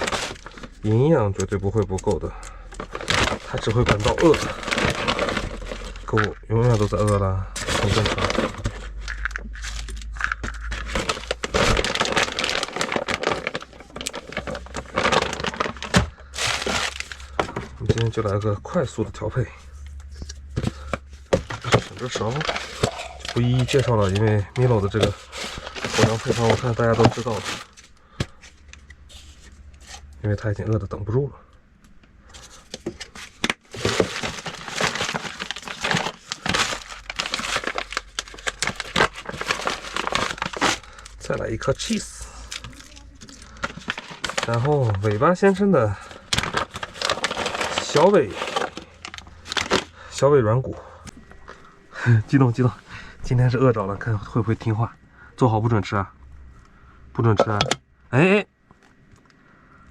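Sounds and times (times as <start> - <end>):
packaging rustling and crinkling: 0.0 - 19.0, 19.6 - 30.1, 32.2 - 50.1
dog food crackling and crunching: 2.8 - 18.3, 20.7 - 27.9, 33.3 - 45.3, 46.1 - 49.9.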